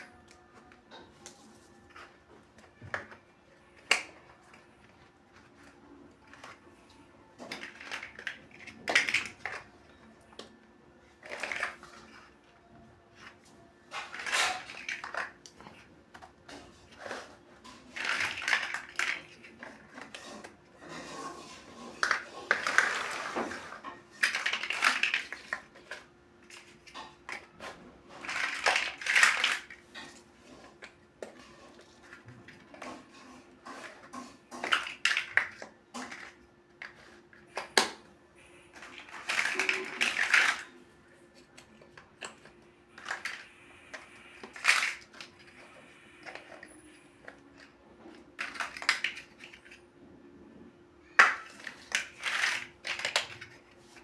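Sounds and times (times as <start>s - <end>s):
plastic blocks clicking and rattling: 0.0s - 38.1s, 38.7s - 49.8s, 51.1s - 54.0s
faint steady hum: 21.8s - 54.0s.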